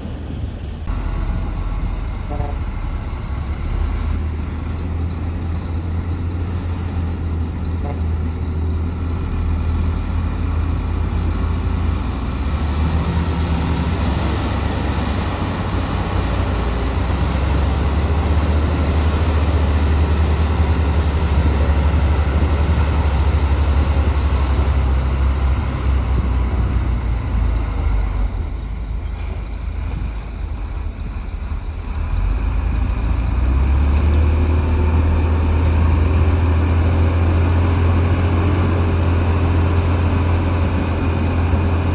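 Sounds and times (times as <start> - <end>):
bulldozer diesel engine rumble: 0.0 - 41.9.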